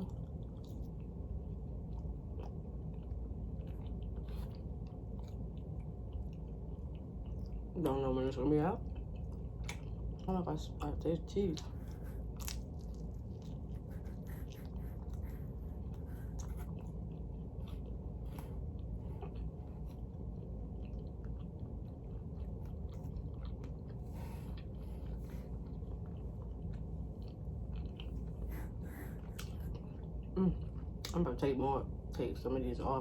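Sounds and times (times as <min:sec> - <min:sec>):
low hum: 0:00.0 - 0:33.0
person chewing with mouth clicks: 0:08.8 - 0:10.3, 0:11.5 - 0:24.0, 0:24.6 - 0:31.2.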